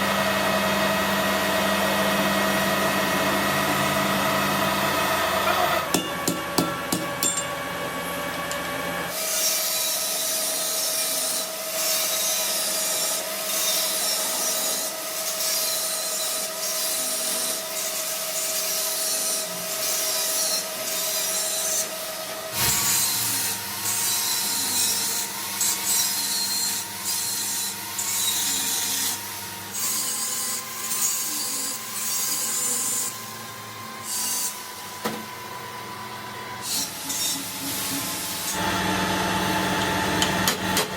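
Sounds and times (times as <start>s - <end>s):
tool rasping on metal: 9.2s - 33.2s.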